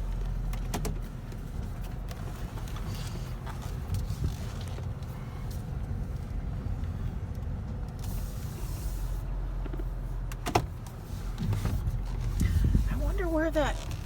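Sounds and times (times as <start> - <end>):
car rumble inside cabin: 0.0 - 14.0.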